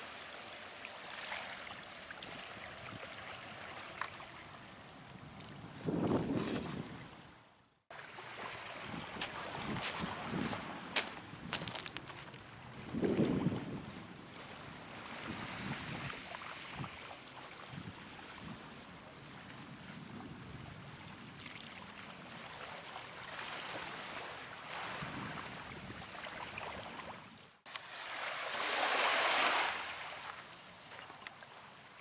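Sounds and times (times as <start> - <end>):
wind on microphone: 5.2 - 7.3, 8.7 - 11.8, 12.6 - 21.4, 24.7 - 27.4
surf washing on shore: 22.3 - 32.0.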